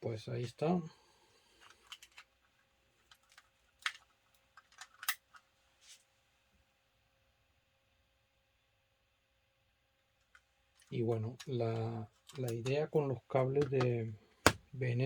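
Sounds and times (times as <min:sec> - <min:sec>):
plastic tools clicking and knocking: 0:03.1 - 0:05.4, 0:13.6 - 0:14.7.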